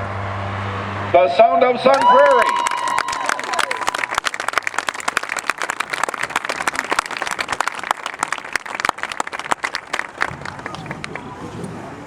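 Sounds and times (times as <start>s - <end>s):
crowd applauding: 1.8s - 11.4s.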